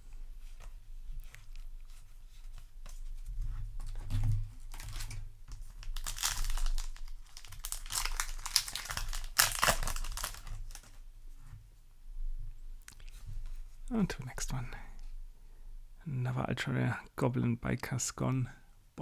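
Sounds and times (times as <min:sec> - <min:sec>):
foil wrapper crinkling: 0:04.6 - 0:11.0.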